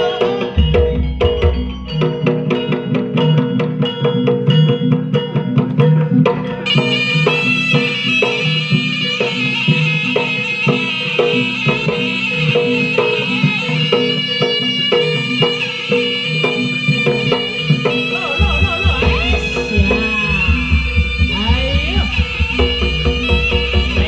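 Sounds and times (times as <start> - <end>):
drum and gamelan beat: 0.0 - 24.0
shrill reed horn melody: 6.6 - 24.0
deep low beat: 18.4 - 24.0.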